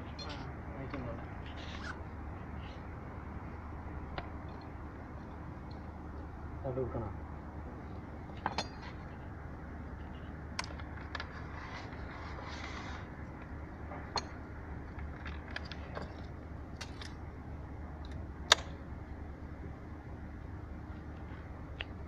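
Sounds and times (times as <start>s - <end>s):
hand tools clinking: 0.0s - 0.5s
steady low hum: 0.0s - 22.0s.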